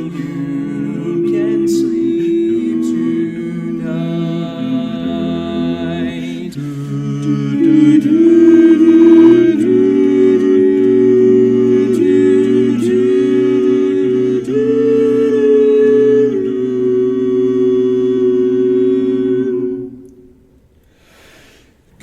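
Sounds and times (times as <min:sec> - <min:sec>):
men singing close harmony: 0:00.0 - 0:19.9.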